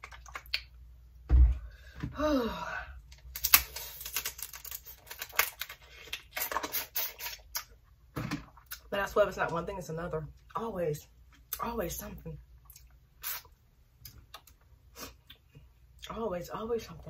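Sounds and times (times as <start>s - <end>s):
crawfish shells cracking: 3.1s - 6.7s.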